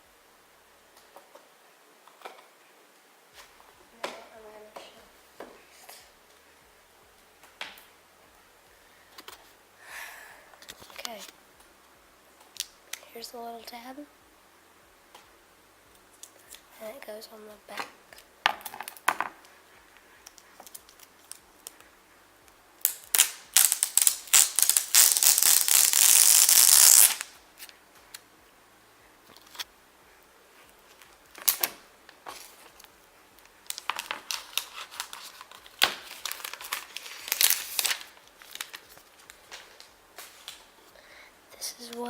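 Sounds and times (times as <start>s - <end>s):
plastic wrap tearing peel: 22.8s - 27.7s, 31.3s - 32.8s, 33.6s - 40.7s
plastic wrap crinkling: 22.8s - 28.2s, 30.6s - 40.8s.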